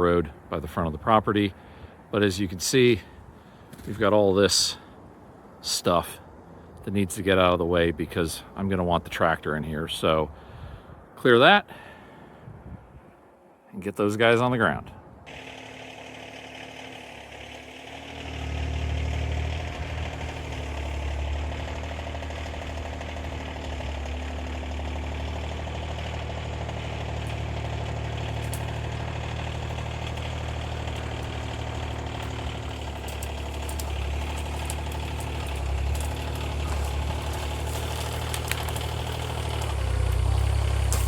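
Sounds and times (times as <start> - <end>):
tractor diesel engine idling: 15.3 - 41.0.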